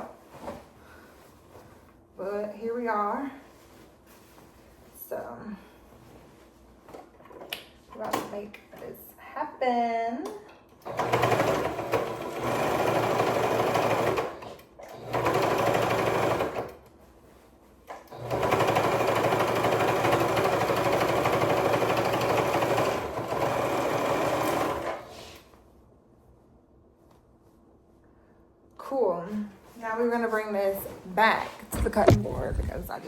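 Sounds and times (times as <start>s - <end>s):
sewing machine stitching: 10.8s - 16.7s, 18.1s - 25.0s.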